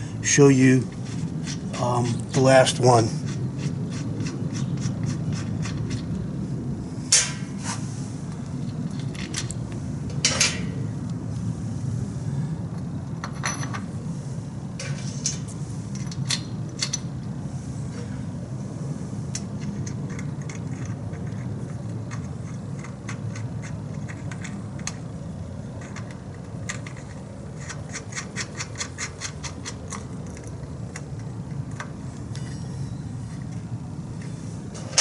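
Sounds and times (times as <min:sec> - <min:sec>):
steady low hum: 0:00.0 - 0:35.0
metal clinks and scrapes: 0:32.3 - 0:33.6.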